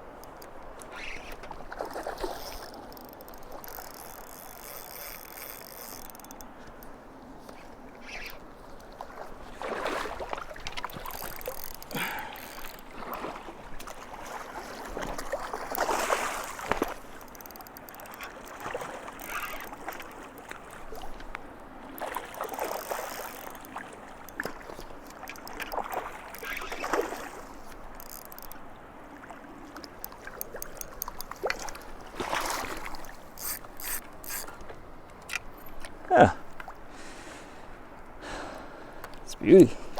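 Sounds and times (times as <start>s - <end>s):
river water washing: 0.0s - 39.9s
fishing reel ticking and whirring: 0.2s - 8.9s, 10.6s - 12.9s, 15.2s - 21.3s, 21.9s - 28.7s, 30.0s - 34.6s.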